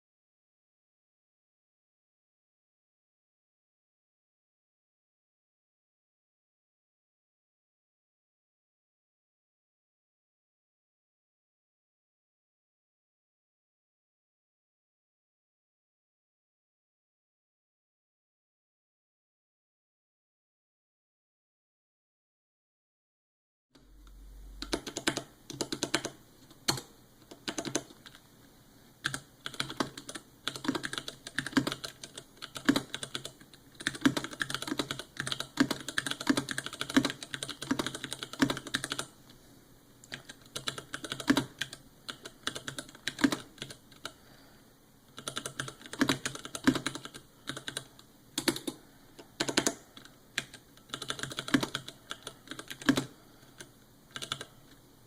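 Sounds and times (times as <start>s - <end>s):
mechanical keyboard typing: 24.6s - 28.2s, 29.0s - 39.1s, 40.0s - 44.2s, 45.1s - 54.7s.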